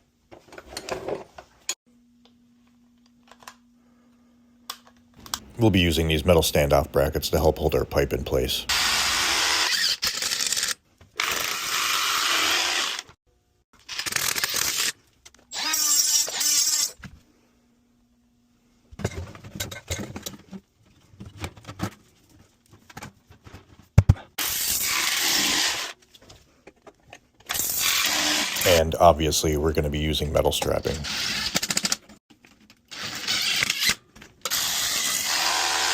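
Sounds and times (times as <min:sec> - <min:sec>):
power drill driving screws: 0:08.7 - 0:13.2, 0:27.5 - 0:28.6, 0:32.9 - 0:35.9.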